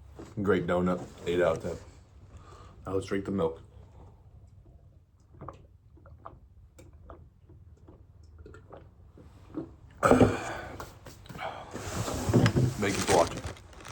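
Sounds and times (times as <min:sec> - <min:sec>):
person gulping milk: 0:04.6 - 0:11.7.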